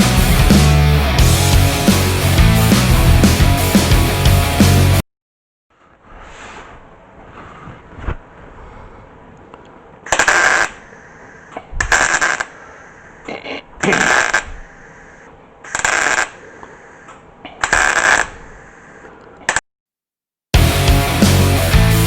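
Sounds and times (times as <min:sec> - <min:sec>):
welding bursts: 0:10.1 - 0:10.8, 0:11.8 - 0:12.6, 0:13.8 - 0:14.7, 0:15.7 - 0:16.4, 0:17.6 - 0:18.4.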